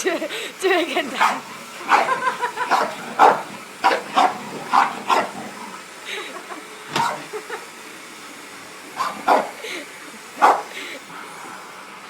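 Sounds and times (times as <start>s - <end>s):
dog barking: 1.2s - 5.6s, 6.9s - 7.3s, 9.0s - 9.6s, 10.4s - 10.7s.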